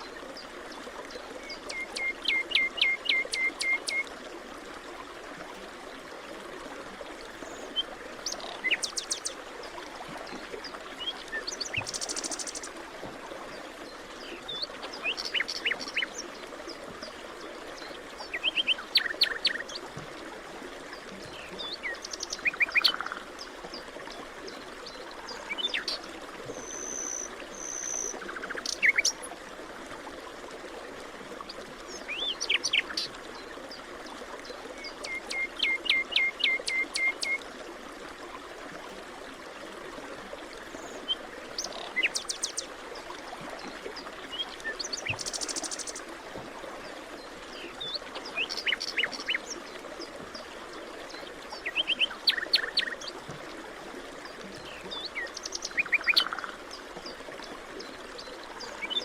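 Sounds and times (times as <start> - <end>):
distant stream hiss: 0.0 - 59.0
songbirds chirping: 13.4 - 20.1, 40.5 - 59.0.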